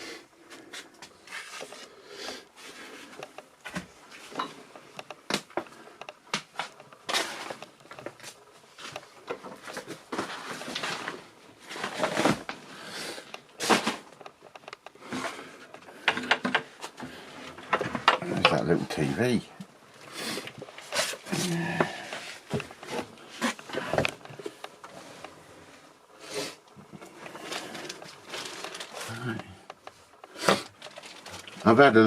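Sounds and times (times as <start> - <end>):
household items knocking and scraping: 13.3 - 25.4, 26.7 - 31.8.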